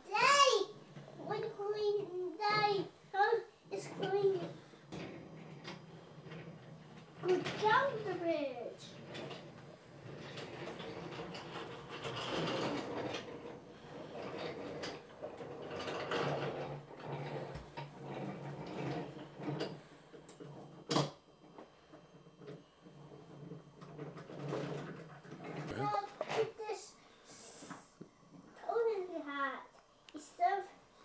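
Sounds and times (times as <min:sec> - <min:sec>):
toy train running on track: 0:00.1 - 0:21.5.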